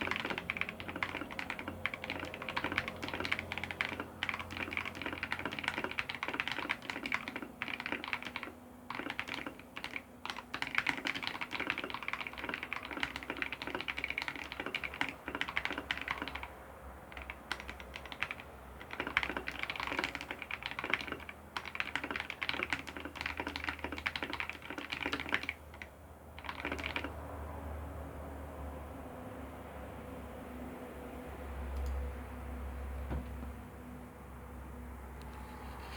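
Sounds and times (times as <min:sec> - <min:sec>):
mechanical keyboard typing: 0:00.0 - 0:27.2.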